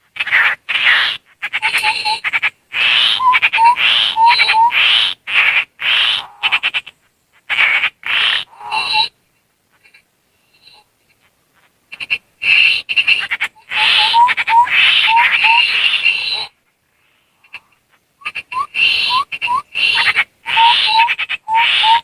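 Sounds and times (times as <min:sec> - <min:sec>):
bird harsh chattering calls: 0:00.2 - 0:22.0
mouth whistling: 0:13.6 - 0:16.5, 0:18.2 - 0:22.0.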